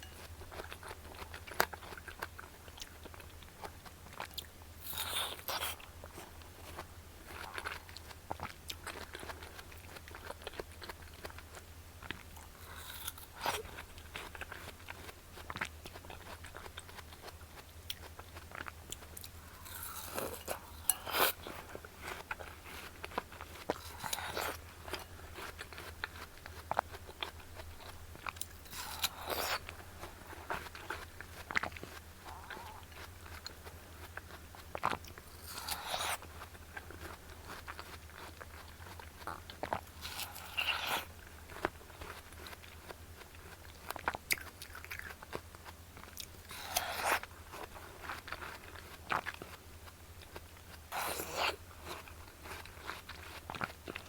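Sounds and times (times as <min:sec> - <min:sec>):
chewing with wet clicks: 0:00.0 - 0:54.0
crunchy watermelon bites: 0:12.0 - 0:22.5, 0:23.1 - 0:49.6, 0:50.2 - 0:54.0.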